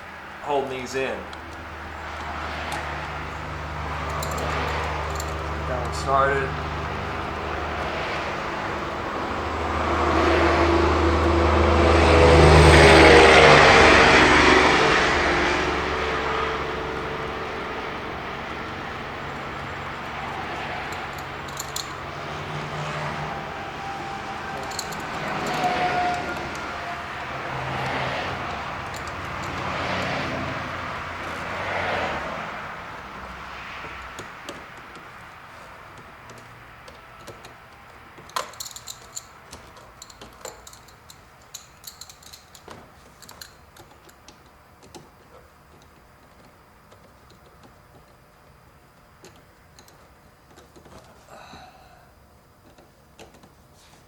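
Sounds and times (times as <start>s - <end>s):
light clicks and metal ticks: 4.0s - 6.4s, 19.4s - 22.1s, 23.8s - 26.7s, 27.8s - 30.2s, 35.9s - 51.1s.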